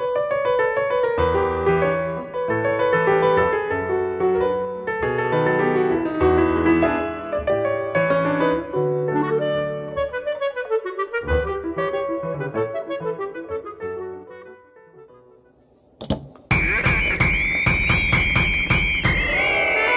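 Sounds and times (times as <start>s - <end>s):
upbeat instrumental music: 16.5s - 19.9s.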